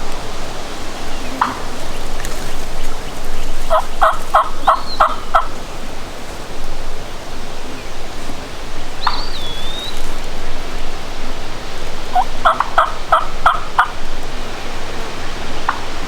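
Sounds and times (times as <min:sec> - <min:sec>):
wild turkey yelping: 0:00.0 - 0:16.0
wind noise: 0:00.0 - 0:16.0.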